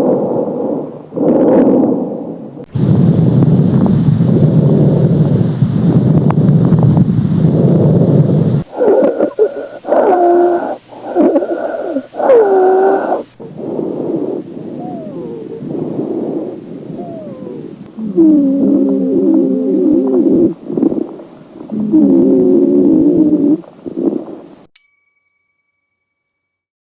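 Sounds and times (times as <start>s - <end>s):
rushing breath sound: 6.7s - 17.0s, 23.4s - 24.6s
wheezing breath whistling: 7.5s - 24.7s.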